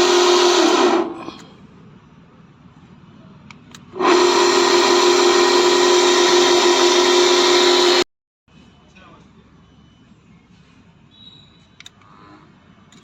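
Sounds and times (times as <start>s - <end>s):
gate motor humming: 0.0s - 1.2s.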